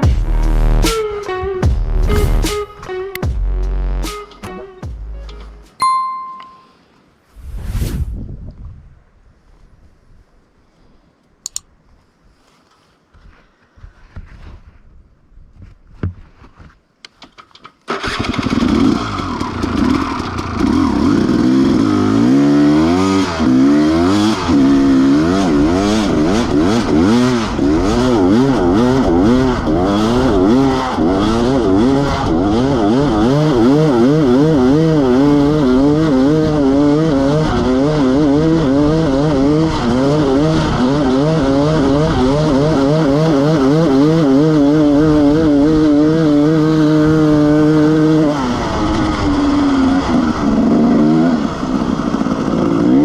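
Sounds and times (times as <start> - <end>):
motorcycle engine revving: 17.9 - 53.0.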